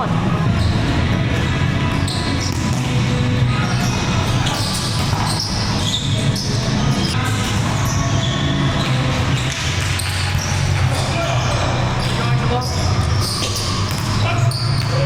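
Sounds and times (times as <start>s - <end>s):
sports hall noise: 0.0s - 15.0s
ball bouncing on court floor: 13.2s - 15.0s.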